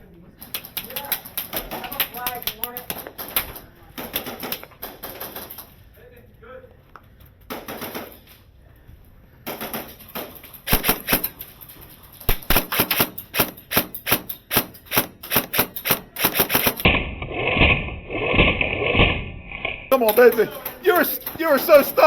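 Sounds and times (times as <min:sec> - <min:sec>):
airsoft guns firing: 0:00.6 - 0:05.7, 0:07.4 - 0:08.3, 0:09.4 - 0:11.5, 0:12.2 - 0:17.0, 0:19.9 - 0:22.0.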